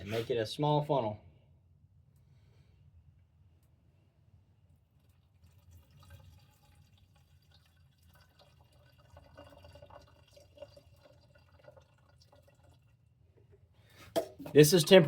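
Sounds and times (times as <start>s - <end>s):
gasoline trickling and dripping: 4.9s - 13.5s.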